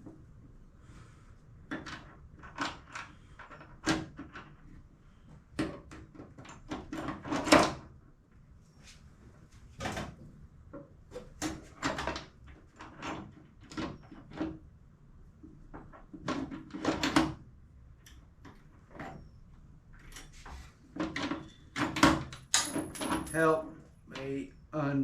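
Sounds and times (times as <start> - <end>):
metal parts clanking: 22.3 - 23.6.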